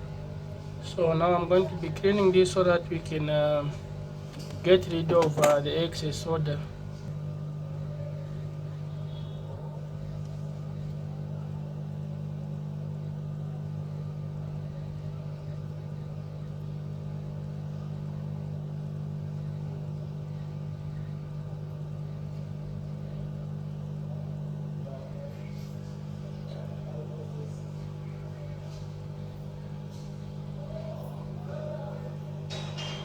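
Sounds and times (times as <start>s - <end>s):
low motor hum: 0.0s - 33.0s.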